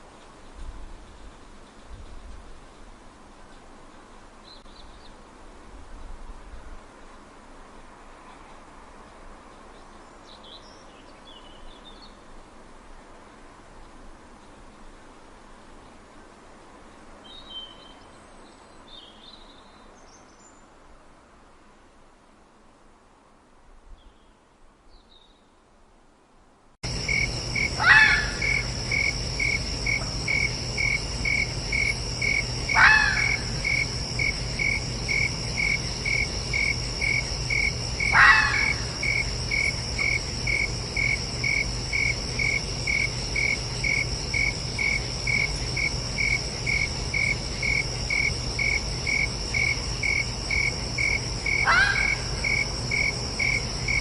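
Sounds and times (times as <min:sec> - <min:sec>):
crickets chirping: 0:26.8 - 0:54.0
fox crying: 0:27.8 - 0:28.6, 0:32.7 - 0:33.6, 0:38.1 - 0:39.0, 0:51.6 - 0:52.5.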